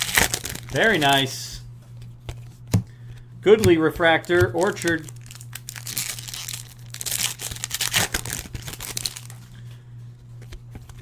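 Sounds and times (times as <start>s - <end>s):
foil wrapper crinkling: 0.0s - 1.4s, 3.7s - 9.7s.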